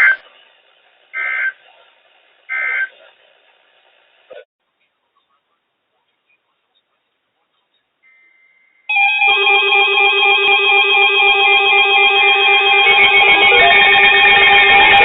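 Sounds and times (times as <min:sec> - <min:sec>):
electronic ringtone melody: 0:08.9 - 0:15.0.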